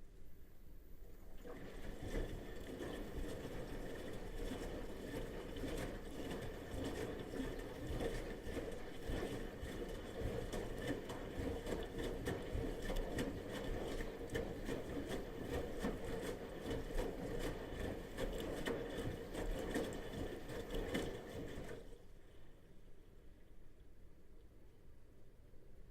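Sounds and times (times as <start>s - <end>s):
water sloshing: 1.0s - 22.1s
washing machine churning: 1.3s - 22.0s.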